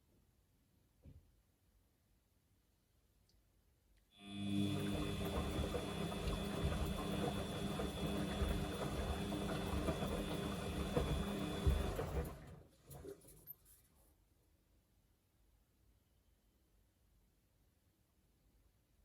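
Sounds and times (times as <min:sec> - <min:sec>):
washing machine motor whine: 0:04.2 - 0:12.6
laundry churning and knocking: 0:04.6 - 0:13.2.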